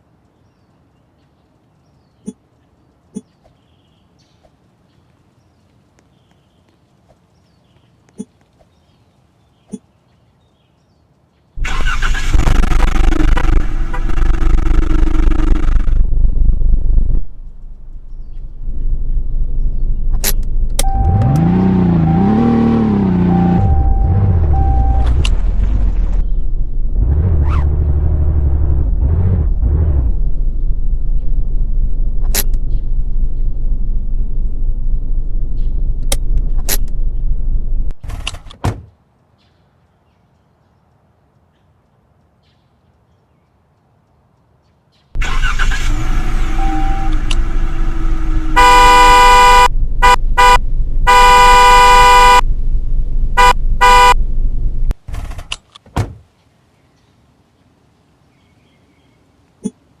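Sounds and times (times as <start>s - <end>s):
low steady rumble: 11.6s - 38.0s, 45.2s - 55.0s
car horn honking: 45.2s - 52.4s, 53.4s - 54.2s.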